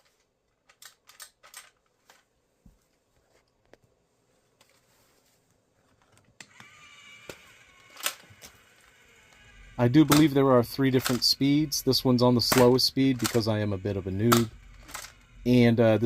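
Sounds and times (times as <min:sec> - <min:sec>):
small motor whining: 0:06.4 - 0:16.0.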